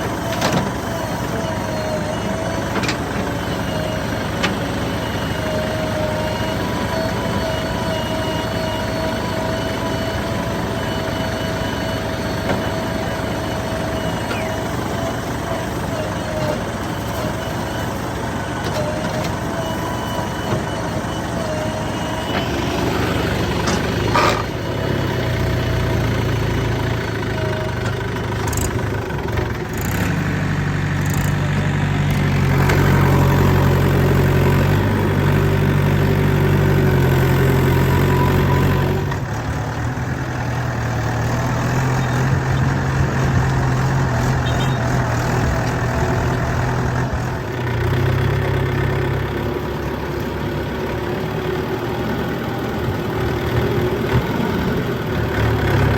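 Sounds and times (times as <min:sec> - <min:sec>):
heavy diesel engine running: 0:00.0 - 0:55.9.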